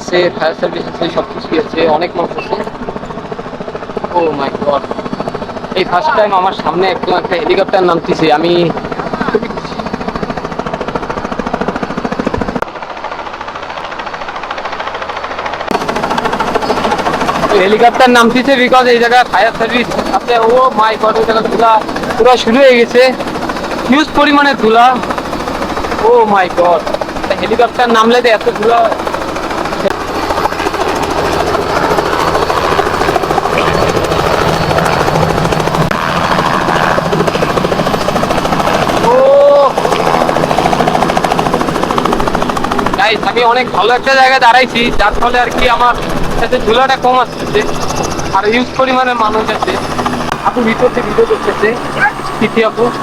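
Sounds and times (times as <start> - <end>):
helicopter rotor chopping: 0.0 - 53.0.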